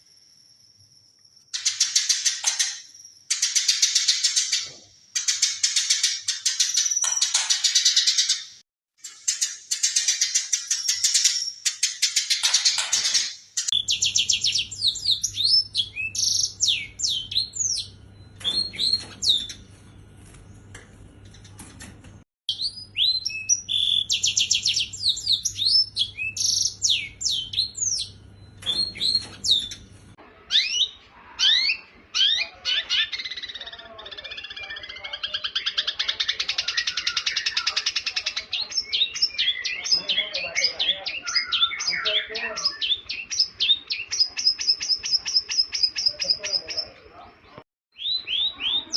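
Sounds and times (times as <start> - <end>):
bird twittering: 1.5 - 19.8, 22.5 - 48.9.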